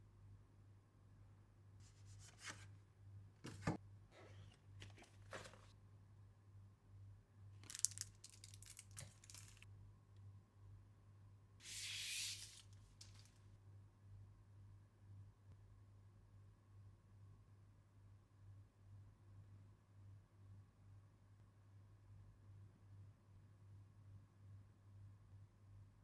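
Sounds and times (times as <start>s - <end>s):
packaging rustling: 3.5s - 5.7s, 7.6s - 9.6s, 12.2s - 13.4s.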